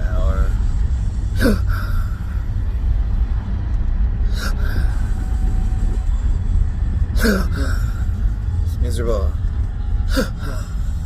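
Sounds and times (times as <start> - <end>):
car rumble: 0.0 - 11.0.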